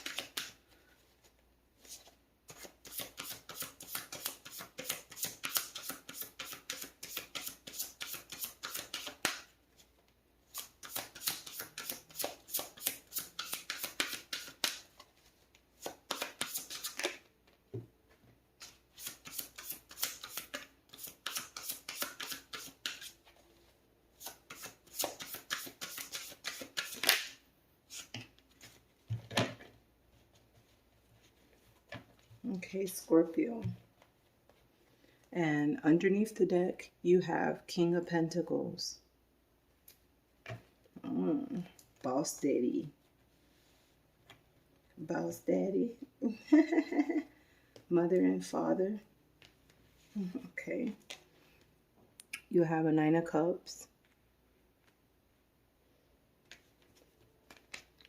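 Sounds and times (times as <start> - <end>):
cards shuffling: 0.0 - 0.6, 1.8 - 9.9, 10.5 - 17.3, 18.6 - 23.4, 24.2 - 28.9, 56.4 - 58.0.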